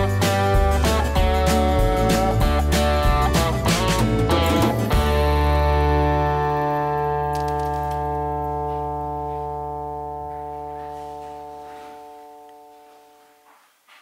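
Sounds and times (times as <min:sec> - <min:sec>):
background music held chord: 0:08.0 - 0:13.5.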